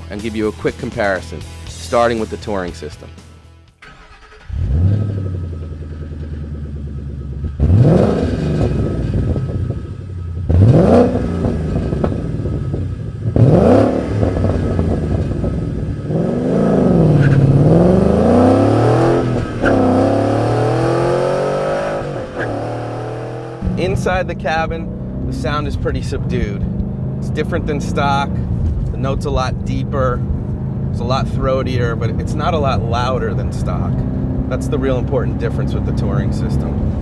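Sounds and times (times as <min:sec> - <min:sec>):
car engine idling and revving: 0:00.0 - 0:37.0.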